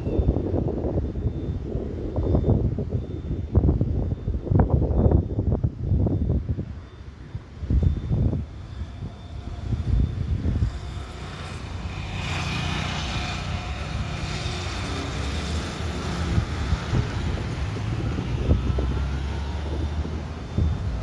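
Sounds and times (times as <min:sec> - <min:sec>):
wind buffeting microphone: 0:00.0 - 0:21.0
jet engines rumbling: 0:05.8 - 0:21.0.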